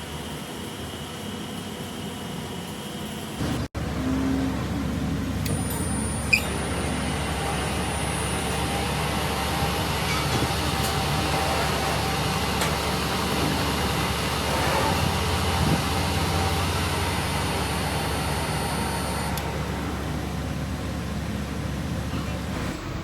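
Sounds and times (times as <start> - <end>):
workshop machinery humming: 0.0 - 23.0
high machine whine: 5.4 - 20.2.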